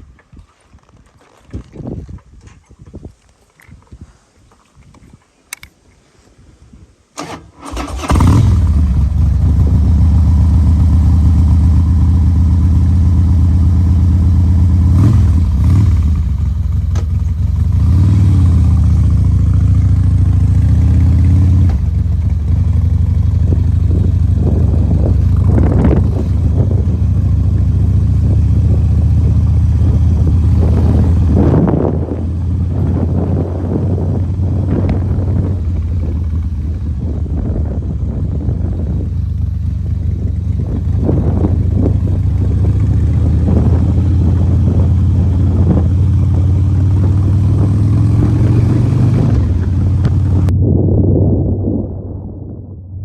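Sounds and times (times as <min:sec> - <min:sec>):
vehicle engine starting and idling: 0:07.2 - 0:13.4
engine throttle blips: 0:07.2 - 0:52.7.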